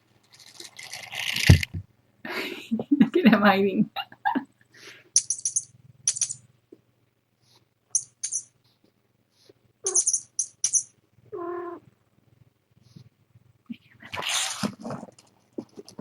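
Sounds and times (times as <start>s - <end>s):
faint low hum: 0.0s - 16.0s
high rattling bursts: 0.3s - 1.5s
cat meowing: 11.3s - 11.8s.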